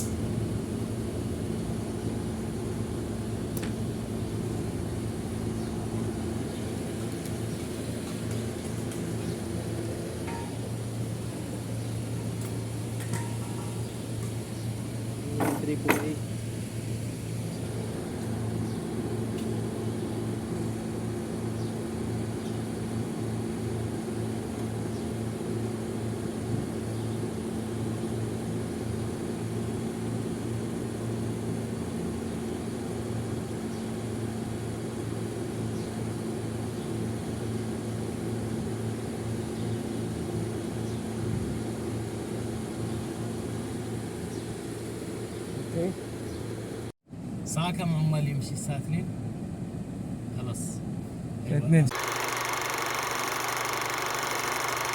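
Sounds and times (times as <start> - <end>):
vehicle engine running: 0.0 - 22.8, 51.7 - 54.9.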